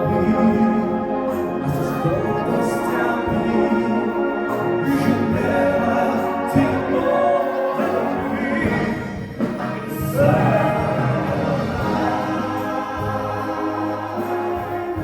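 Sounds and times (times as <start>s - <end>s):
singers and choir singing: 0.0s - 15.0s
wind orchestra playing: 0.0s - 15.0s.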